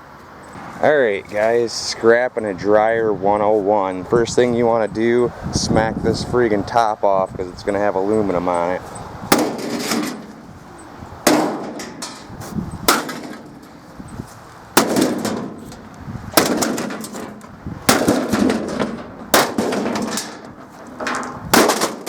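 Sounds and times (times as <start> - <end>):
pickaxe striking sheet metal: 9.3 - 10.4, 11.3 - 13.8, 14.8 - 22.0
metal panel clattering ring: 9.3 - 22.0.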